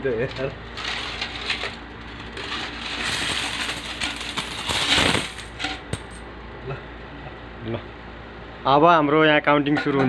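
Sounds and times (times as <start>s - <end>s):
coins clattering out of a box: 0.4s - 6.2s.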